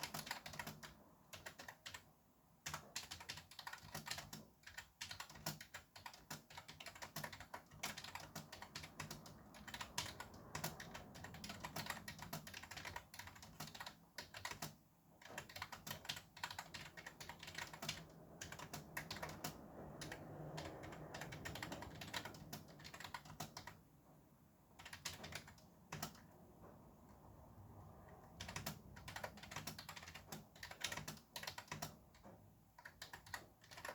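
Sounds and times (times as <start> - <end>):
fast typing on keyboard: 0.0 - 23.8, 24.7 - 26.4, 28.0 - 33.9
steady traffic noise: 7.9 - 12.8, 16.7 - 30.6.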